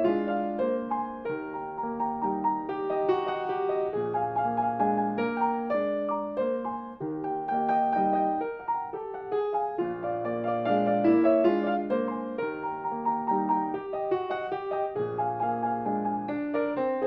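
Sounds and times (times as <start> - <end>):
grand piano playing: 0.0 - 17.0.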